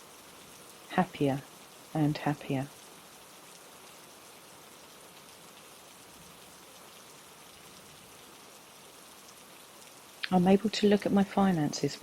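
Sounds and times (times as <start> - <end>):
patter of raindrops: 0.0 - 12.0.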